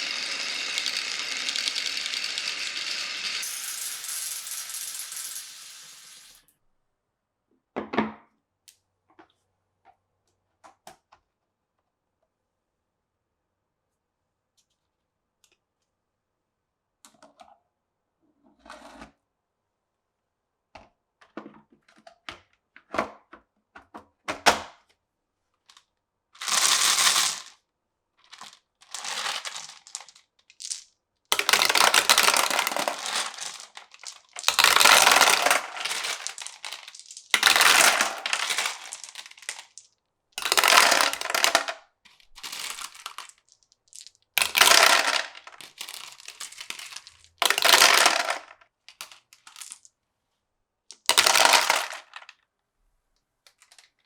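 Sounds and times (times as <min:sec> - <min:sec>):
glass marbles rolling and clattering: 0:00.0 - 0:06.5, 0:26.4 - 0:27.5, 0:28.4 - 0:49.9, 0:50.9 - 0:52.3.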